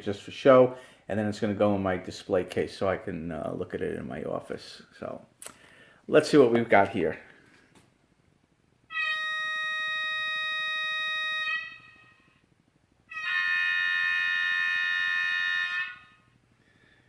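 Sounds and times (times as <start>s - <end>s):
model train horn blasts: 13.1s - 16.3s.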